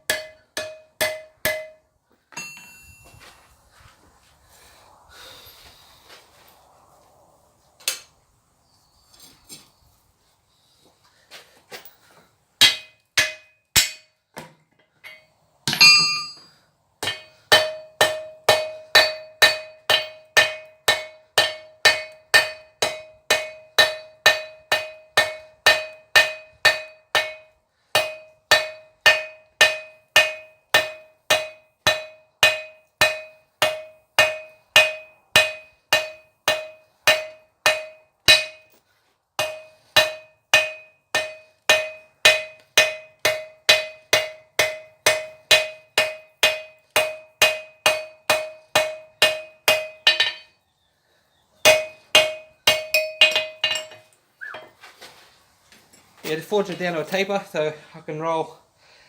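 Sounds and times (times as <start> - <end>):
hammer striking metal on anvil: 0.0 - 3.3, 12.6 - 38.8, 39.4 - 50.6, 51.6 - 54.0
loud ringing clang: 2.4 - 3.4, 15.7 - 16.5.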